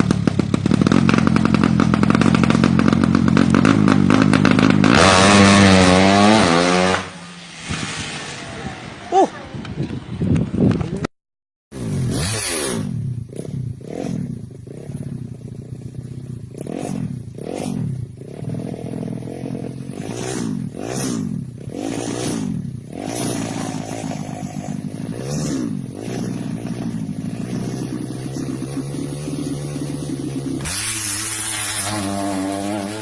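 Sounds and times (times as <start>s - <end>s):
motorcycle engine revving: 0.0s - 11.0s, 11.7s - 33.0s.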